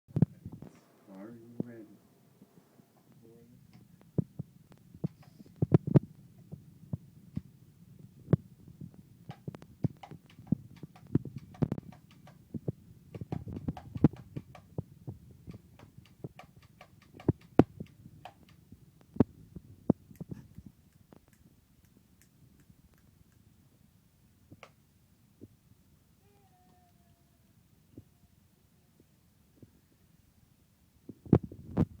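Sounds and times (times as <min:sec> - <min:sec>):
steady low hum: 0:00.1 - 0:32.0
table headpiece clicking and knocking: 0:09.3 - 0:12.4, 0:13.2 - 0:14.8.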